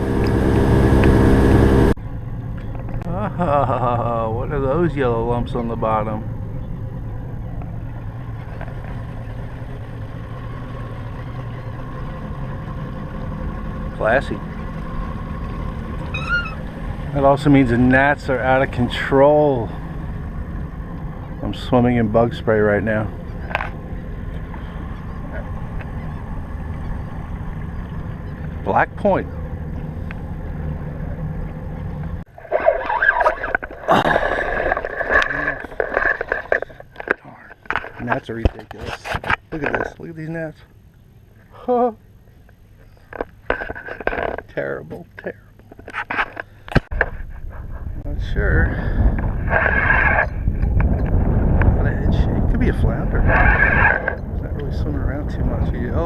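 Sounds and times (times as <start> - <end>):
boat engine idling: 0.0 - 3.5, 4.2 - 38.0
scrapes and clicks: 32.4 - 40.0, 43.0 - 44.6, 45.6 - 48.0, 53.3 - 54.2.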